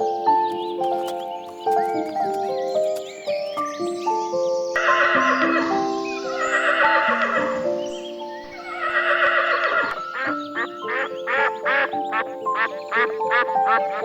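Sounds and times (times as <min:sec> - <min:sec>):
background music: 0:00.0 - 0:14.0
duck quacking: 0:04.8 - 0:05.8, 0:08.9 - 0:14.0
horse whinnying: 0:06.5 - 0:07.9, 0:08.5 - 0:10.4.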